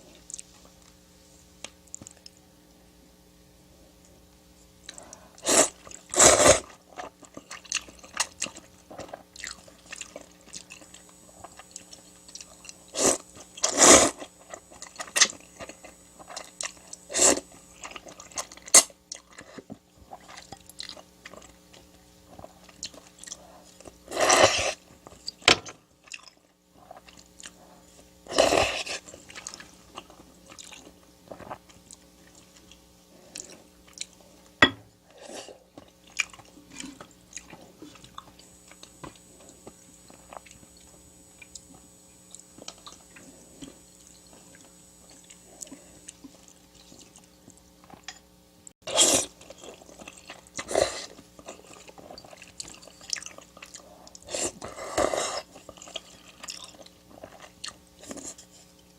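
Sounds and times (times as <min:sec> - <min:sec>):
chewing with wet mouth clicks: 0:29.2 - 0:34.2, 0:35.8 - 0:48.1, 0:49.4 - 0:54.3, 0:55.5 - 0:58.9.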